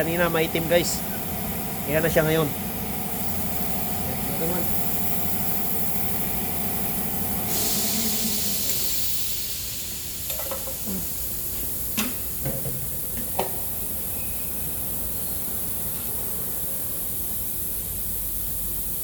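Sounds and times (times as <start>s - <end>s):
spray hissing: 0.1s - 11.3s.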